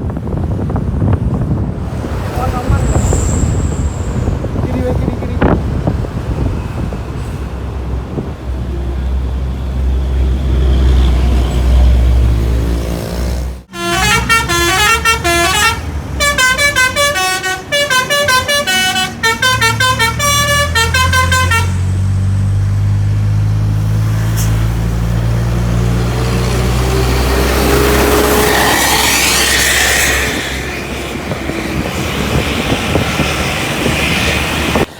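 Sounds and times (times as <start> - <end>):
multi-tone air horn tune: 13.7 - 21.8.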